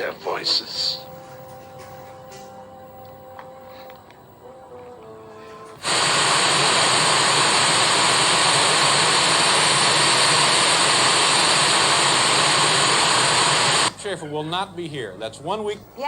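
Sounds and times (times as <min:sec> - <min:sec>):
faint television programme sound: 0:00.0 - 0:02.5, 0:13.9 - 0:16.0
television static hiss: 0:00.0 - 0:16.0.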